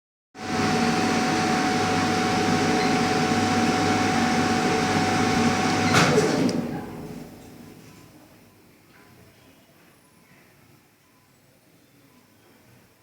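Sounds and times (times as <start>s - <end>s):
vacuum pump humming and whining: 0.4s - 8.9s.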